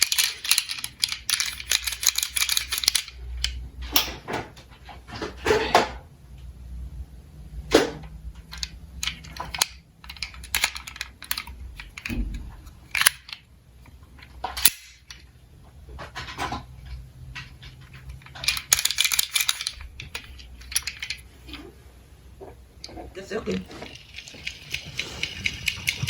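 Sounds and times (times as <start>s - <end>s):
toy metal cars clattering: 0.0s - 4.3s, 8.4s - 13.5s, 16.0s - 21.6s, 23.6s - 26.0s.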